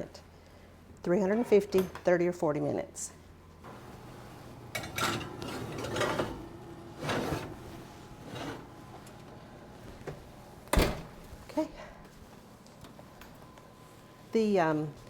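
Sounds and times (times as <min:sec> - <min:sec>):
baking pan scraping and sliding: 0:03.7 - 0:09.1
oven door shutting: 0:03.7 - 0:11.4.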